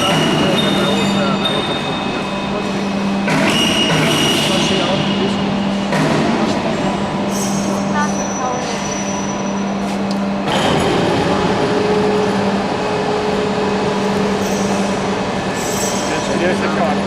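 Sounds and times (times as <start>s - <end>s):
machine hum: 0.0s - 17.0s.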